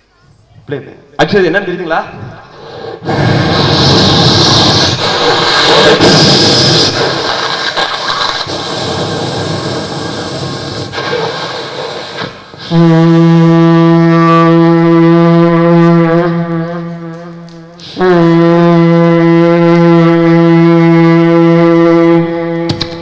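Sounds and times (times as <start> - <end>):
vocal train rumbling and hissing: 2.0 - 16.3, 17.8 - 22.4
vocal train horn blast: 12.6 - 23.0.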